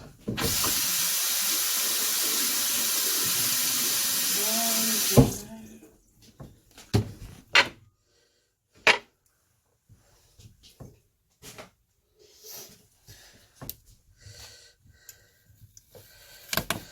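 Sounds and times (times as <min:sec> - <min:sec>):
water running from a tap: 0:00.4 - 0:05.8.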